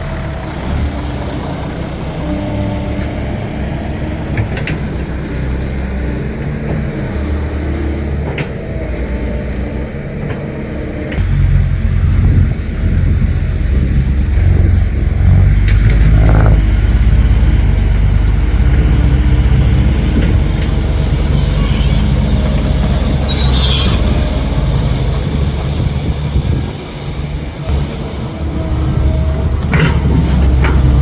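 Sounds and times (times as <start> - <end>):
truck diesel engine under load: 0.0 - 31.0.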